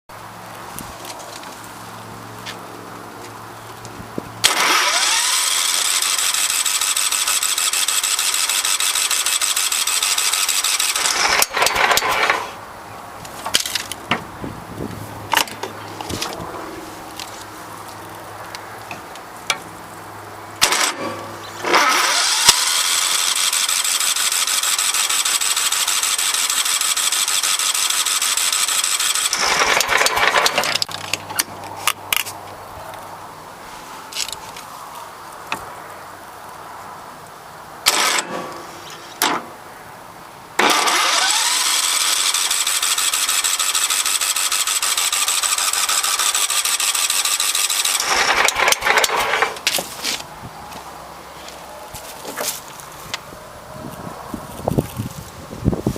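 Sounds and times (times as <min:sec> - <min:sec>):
electric starter cranking engine: 0:04.4 - 0:12.6, 0:20.6 - 0:31.0, 0:37.8 - 0:38.7, 0:40.6 - 0:49.7.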